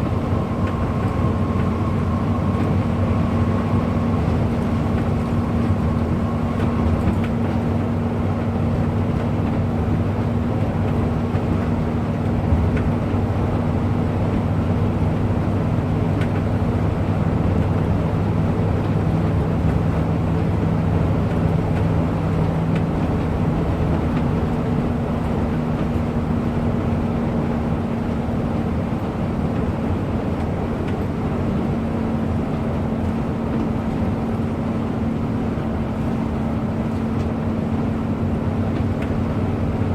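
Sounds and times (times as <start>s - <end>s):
bus engine drone: 0.0s - 39.9s
road noise: 0.0s - 39.9s.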